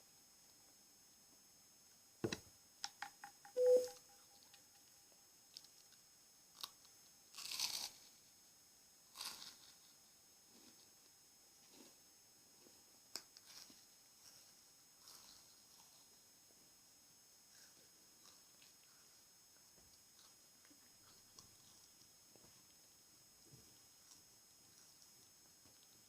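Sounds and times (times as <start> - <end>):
close taps and clicks: 2.2 - 4.0
brief squeak: 3.6 - 4.0.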